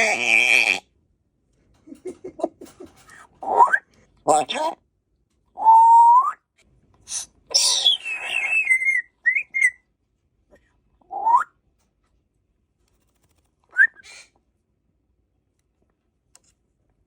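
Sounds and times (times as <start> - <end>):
parrot chirps: 7.1 - 9.8
parrot whistling: 7.5 - 9.8.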